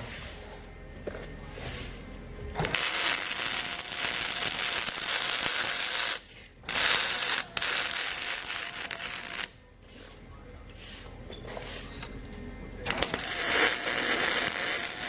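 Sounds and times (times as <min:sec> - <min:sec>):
welding arc hissing: 0:02.6 - 0:09.6, 0:12.9 - 0:15.0.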